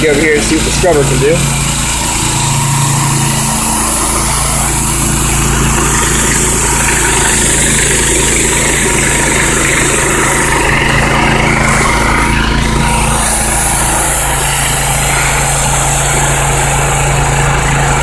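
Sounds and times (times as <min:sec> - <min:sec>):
high-pressure water hiss: 0:00.0 - 0:18.0
pressure washer engine running: 0:00.0 - 0:18.0.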